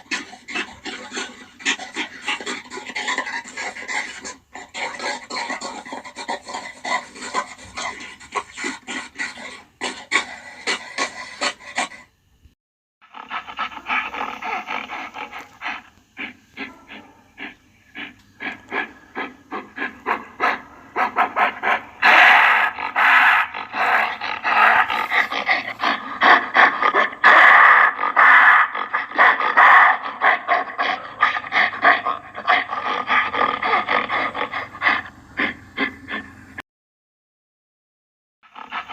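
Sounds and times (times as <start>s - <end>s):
gorilla grunting: 0.0s - 12.1s, 13.1s - 36.6s, 38.6s - 38.9s.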